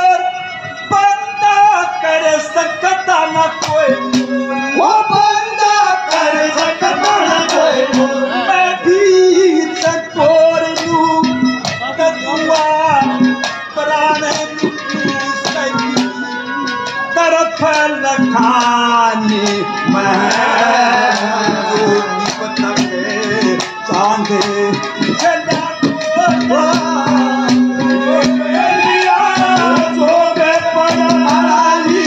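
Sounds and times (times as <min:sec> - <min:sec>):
gliding folk melody: 0:00.2 - 0:32.0
hand-drum strokes: 0:03.6 - 0:32.0.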